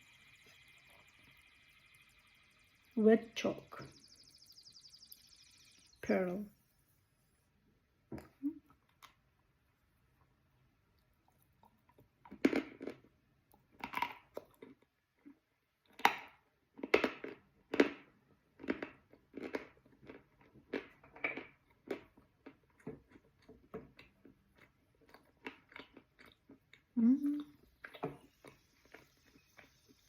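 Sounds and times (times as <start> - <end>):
chewing chalk with moist crunches: 10.1 - 30.0.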